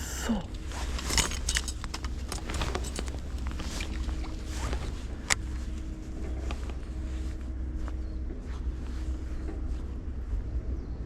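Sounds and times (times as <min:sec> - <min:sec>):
faint hum: 0:00.0 - 0:11.0
low rumble: 0:00.0 - 0:11.0
fishing tackle clicks and rustles: 0:00.5 - 0:07.5.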